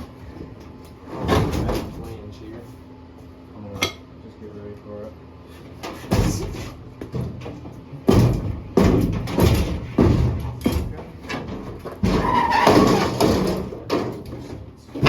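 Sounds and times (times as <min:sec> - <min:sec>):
heavy knocks and thuds: 0:05.9 - 0:14.6
scraping and rattling: 0:08.1 - 0:14.6.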